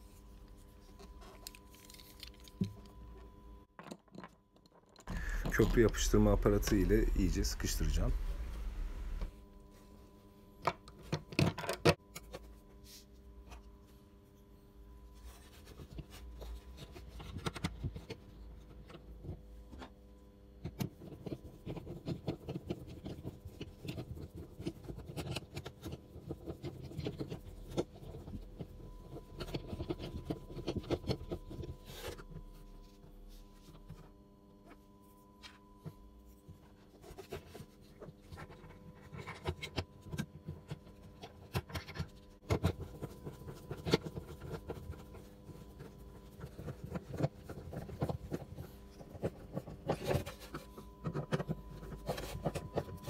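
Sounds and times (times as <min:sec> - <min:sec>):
rubbing and scraping: 0:34.8 - 0:53.0.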